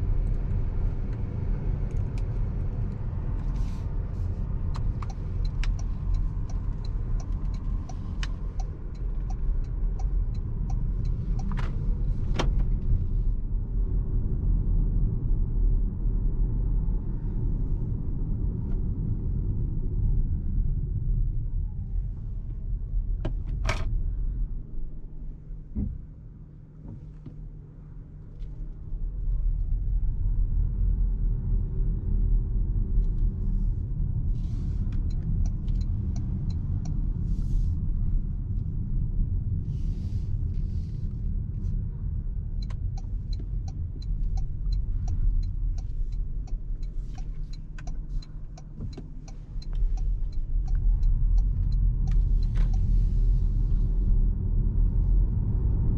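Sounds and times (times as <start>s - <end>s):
road and drivetrain rumble: 0.0s - 55.9s
light ticks: 4.6s - 11.8s, 34.5s - 37.4s, 42.4s - 53.2s.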